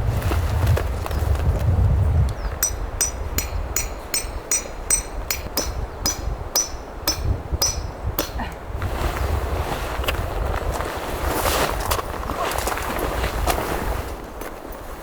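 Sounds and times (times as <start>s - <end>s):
hammer striking metal tent peg: 2.6s - 8.6s.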